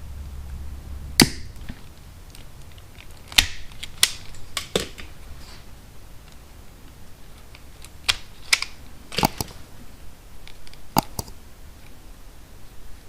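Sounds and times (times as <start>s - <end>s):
hand tools clicking and tapping: 7.5s - 9.6s, 11.0s - 11.4s.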